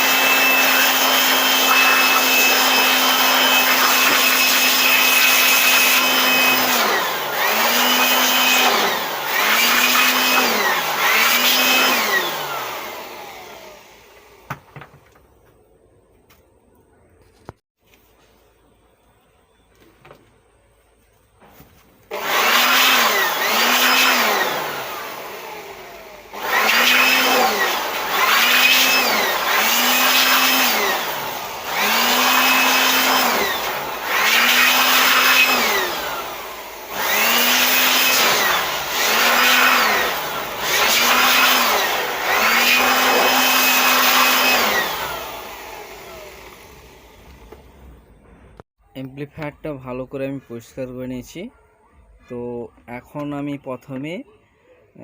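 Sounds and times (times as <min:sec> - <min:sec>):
electric blower whining: 0:00.0 - 0:15.3, 0:22.1 - 0:48.6.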